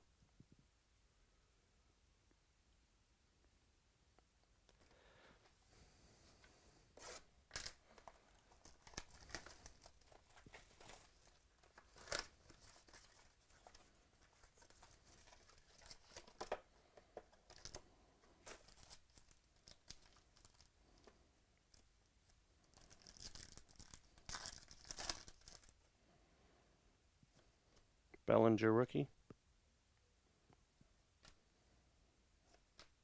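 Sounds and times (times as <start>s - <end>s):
rustling of card packaging: 6.3s - 25.8s.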